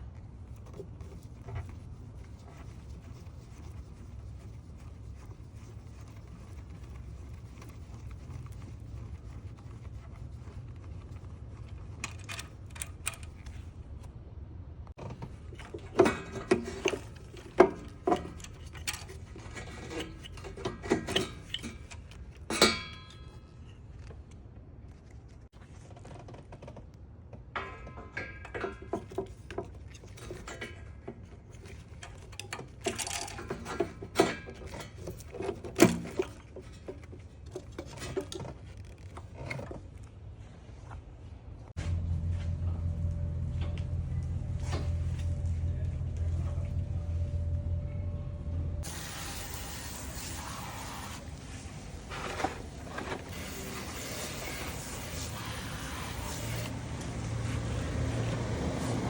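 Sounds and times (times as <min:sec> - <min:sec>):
metal tools clinking: 0:32.0 - 0:36.3
low steady hum: 0:34.4 - 0:48.9.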